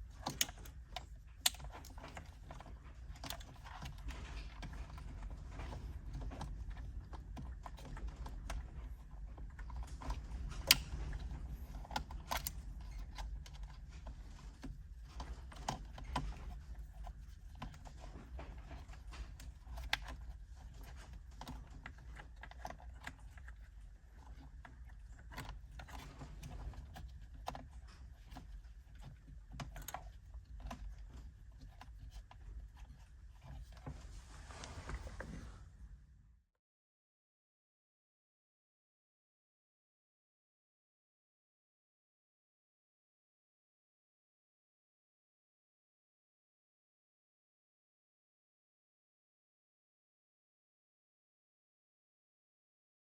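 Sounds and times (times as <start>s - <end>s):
steady low hum: 0.0s - 36.2s
plastic parts clicking: 10.2s - 13.5s.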